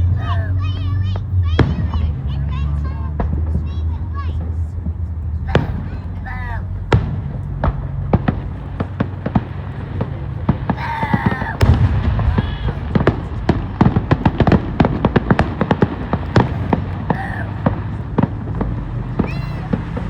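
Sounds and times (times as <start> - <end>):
fireworks bangs and crackles: 0.0 - 20.0.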